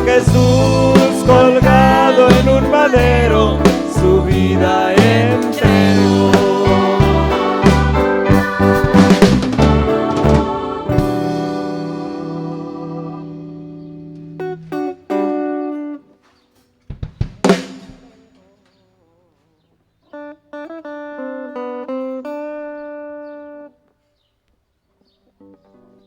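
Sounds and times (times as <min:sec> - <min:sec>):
guitar chords: 0:00.0 - 0:16.3, 0:20.2 - 0:23.9.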